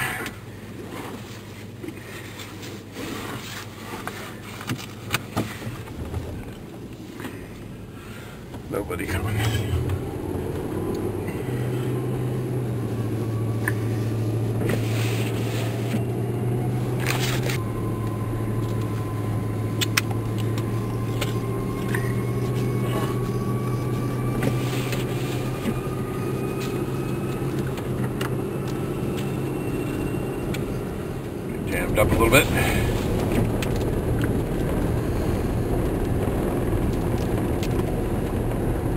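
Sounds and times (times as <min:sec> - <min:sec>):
short scrapes and crackles: 0:00.9 - 0:07.3, 0:13.6 - 0:16.1
vehicle engine running: 0:05.5 - 0:38.9
faint rising whine: 0:08.6 - 0:38.9.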